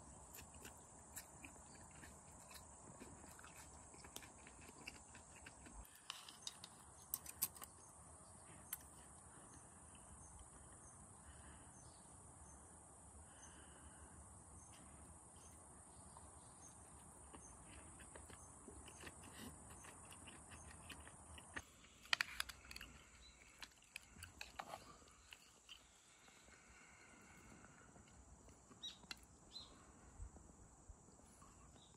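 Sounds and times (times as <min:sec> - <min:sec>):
insects chirring: 0:00.0 - 0:31.9
small clicks and knocks: 0:05.9 - 0:07.8, 0:22.0 - 0:25.5.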